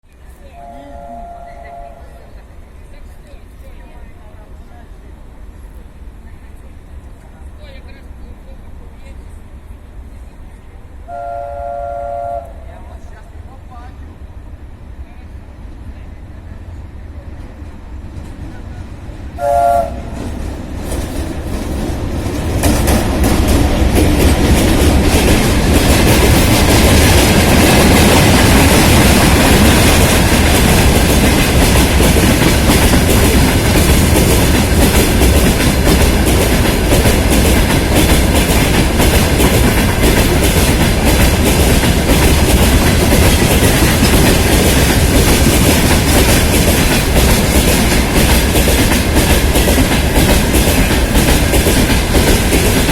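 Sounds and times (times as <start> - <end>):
locomotive horn blast: 0.5 - 2.3, 11.1 - 12.8, 19.4 - 20.2.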